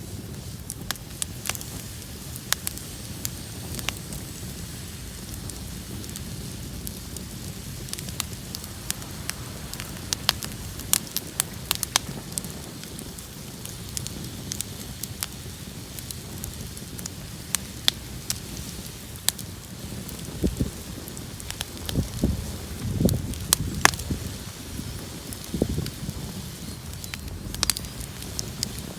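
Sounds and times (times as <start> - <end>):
bonfire crackles and pops: 0.0 - 28.9
low rush of flames: 0.0 - 28.9.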